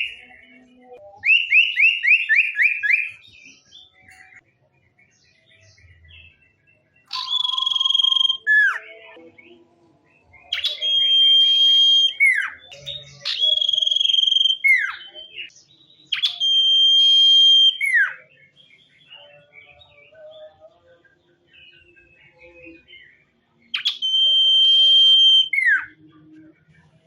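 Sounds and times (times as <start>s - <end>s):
soft bird twittering: 0.0s - 8.8s, 9.5s - 20.5s, 21.4s - 26.3s
songbird whistling phrases: 1.0s - 3.3s, 7.1s - 8.9s, 10.5s - 15.5s, 16.1s - 18.3s, 23.6s - 26.1s.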